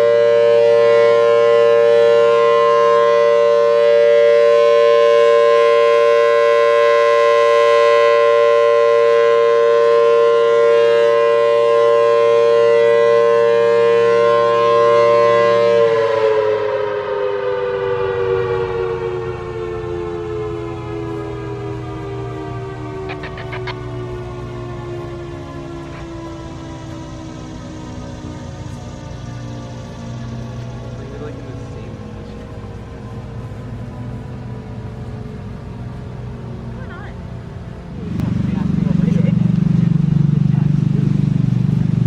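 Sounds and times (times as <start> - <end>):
two-tone siren winding down: 0.0 - 42.0.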